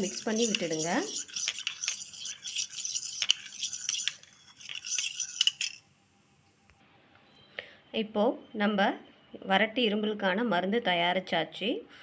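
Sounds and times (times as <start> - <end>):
spoon clinking and scraping container: 0.0 - 5.8.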